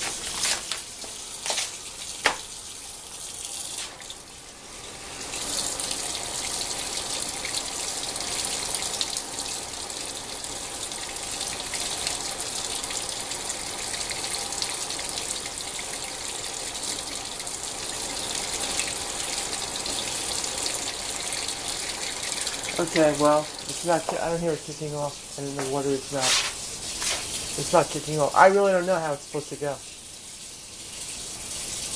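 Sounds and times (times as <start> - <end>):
water tap running: 0.0 - 31.9.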